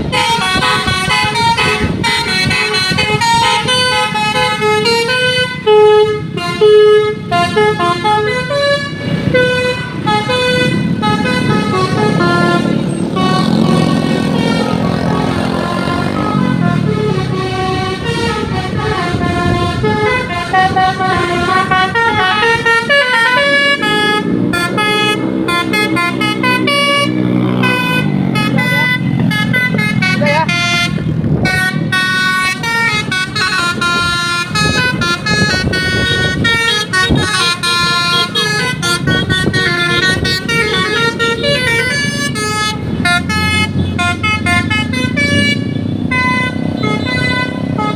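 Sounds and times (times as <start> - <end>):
multi-tone vehicle horn melody: 0.0 - 47.9.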